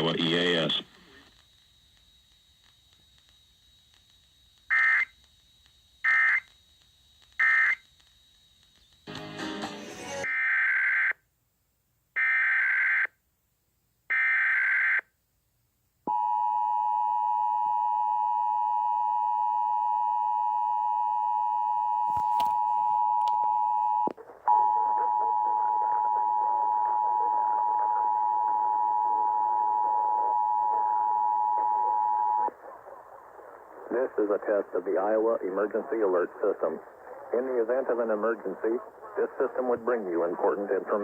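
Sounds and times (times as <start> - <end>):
background hiss: 0.0 - 10.2.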